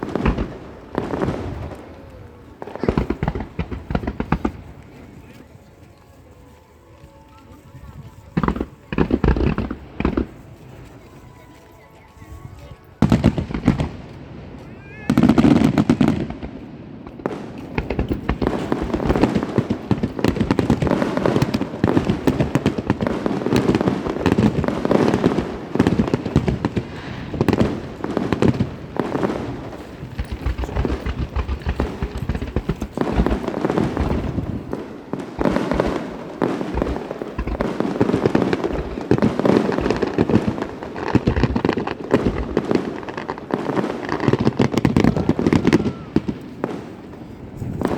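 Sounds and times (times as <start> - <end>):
loud firework burst: 0.0 - 4.8, 17.2 - 47.9
fireworks bangs and crackling: 0.0 - 47.9.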